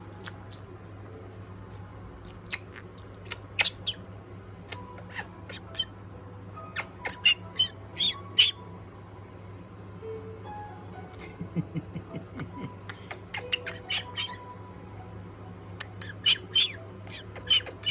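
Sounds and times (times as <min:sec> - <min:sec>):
parrot chirping and squeaking: 0:00.0 - 0:00.8, 0:02.5 - 0:06.0, 0:06.6 - 0:08.7, 0:12.9 - 0:14.6, 0:15.8 - 0:17.9
steady low hum: 0:00.0 - 0:17.9.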